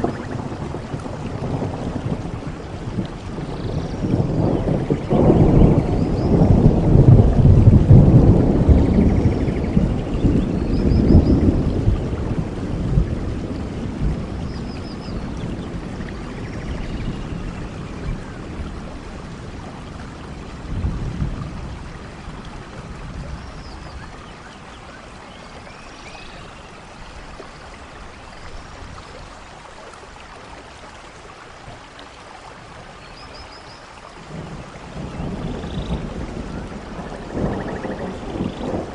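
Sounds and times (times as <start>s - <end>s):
low thunder rumbles: 0.0s - 25.7s, 34.1s - 38.9s
soft rain falling: 0.0s - 38.9s.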